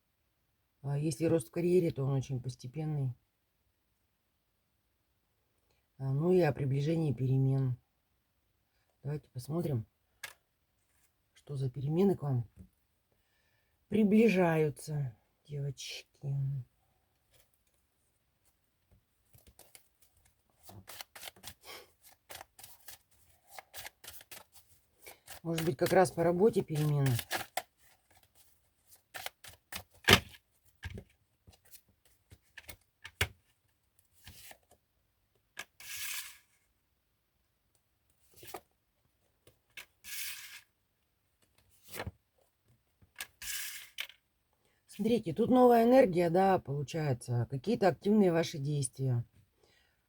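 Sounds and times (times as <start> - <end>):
cards being shuffled: 19.3 - 33.3, 34.2 - 34.8, 35.6 - 36.6, 38.3 - 38.7, 39.7 - 40.7, 41.8 - 42.1
cards swishing: 20.6 - 26.0, 35.8 - 36.5, 40.0 - 40.7.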